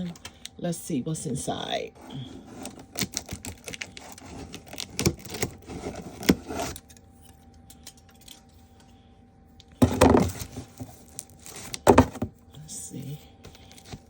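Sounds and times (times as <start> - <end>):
cardboard tearing: 2.5 - 6.9, 9.8 - 12.3
cardboard packaging clicks and rattles: 2.6 - 8.4, 9.8 - 12.3.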